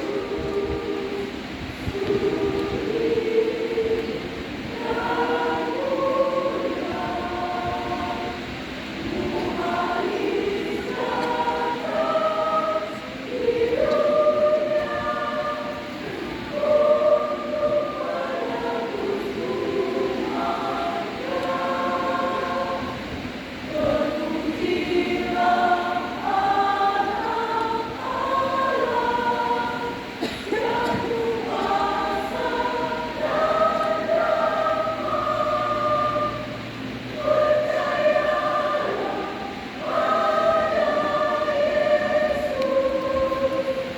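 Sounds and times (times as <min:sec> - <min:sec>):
choir singing in harmony: 0:00.0 - 0:43.9.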